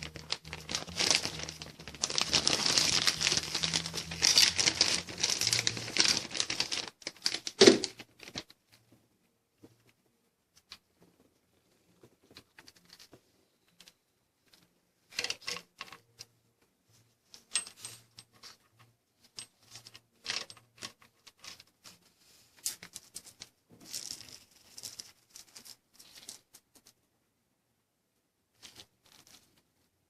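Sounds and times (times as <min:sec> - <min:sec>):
tools and metal parts rattling: 0:00.0 - 0:07.4, 0:15.1 - 0:16.0, 0:17.4 - 0:21.8.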